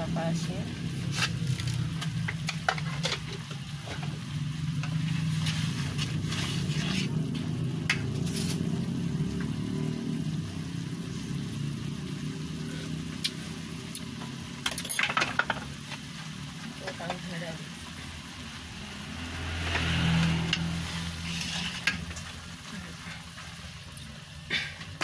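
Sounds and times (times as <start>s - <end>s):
ingredients clattering in pan: 1.1s - 5.6s, 14.1s - 17.4s.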